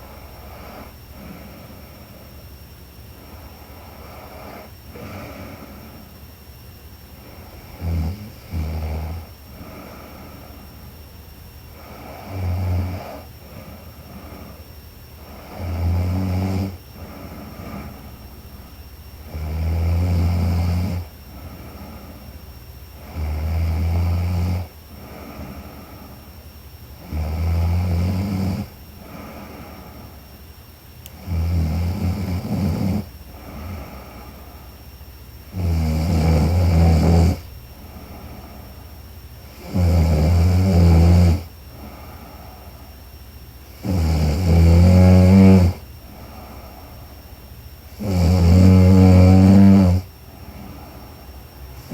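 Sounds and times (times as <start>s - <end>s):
quiet breaths: 0.0s - 51.9s
woman snoring: 3.2s - 6.1s, 7.2s - 10.7s, 11.7s - 14.6s, 15.2s - 18.2s, 19.2s - 22.3s, 23.0s - 26.3s, 27.0s - 30.2s, 31.2s - 34.7s, 35.5s - 38.7s, 39.4s - 42.6s, 43.7s - 47.0s, 47.9s - 51.2s.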